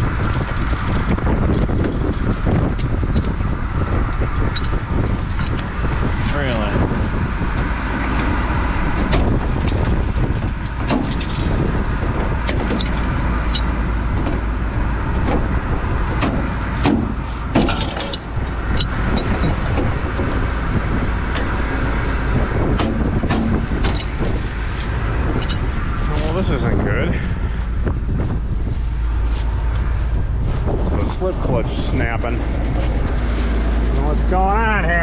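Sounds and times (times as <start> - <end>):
combine harvester running: 0.0 - 35.0
machinery clicks and knocks: 7.5 - 14.6, 15.2 - 26.5.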